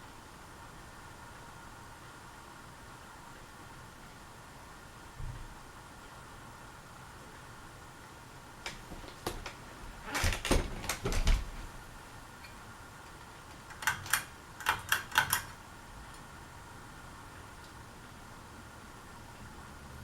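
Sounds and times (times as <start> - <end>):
ceiling fan running: 0.0 - 20.0
sharp clicks and light knocks: 8.6 - 11.6, 12.4 - 16.3.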